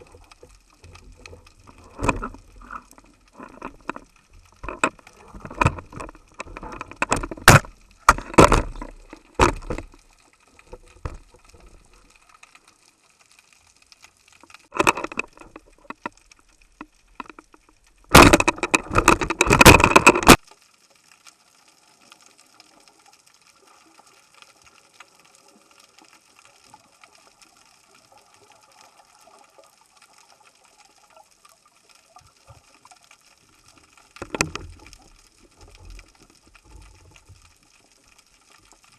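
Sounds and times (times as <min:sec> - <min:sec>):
underwater splashing and knocking: 0:00.0 - 0:12.2, 0:14.3 - 0:20.5, 0:32.2 - 0:38.9
faint steady hiss: 0:00.0 - 0:19.1, 0:20.3 - 0:38.9.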